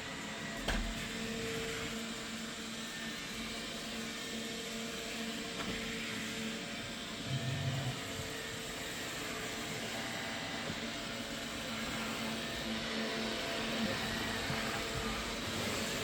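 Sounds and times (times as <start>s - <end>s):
robot vacuum whirring: 4.0s - 16.0s.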